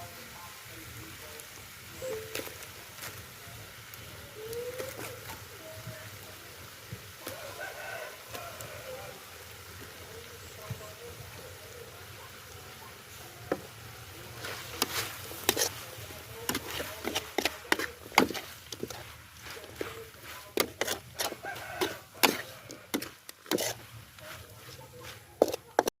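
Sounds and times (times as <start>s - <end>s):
knife chopping on wooden board: 16.5s - 18.9s, 20.6s - 23.8s.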